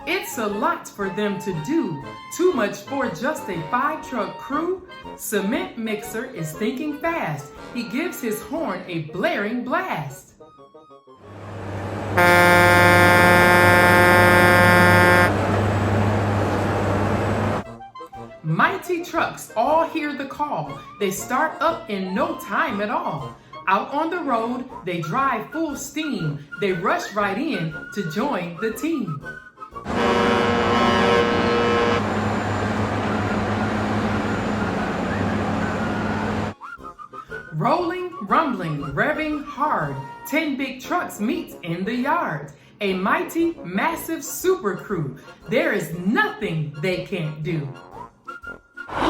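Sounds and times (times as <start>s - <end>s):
road noise: 11.2s - 17.6s, 29.9s - 36.5s
truck air horn blast: 11.2s - 17.6s, 29.9s - 36.5s
low steady rumble: 11.3s - 17.6s, 29.9s - 36.5s.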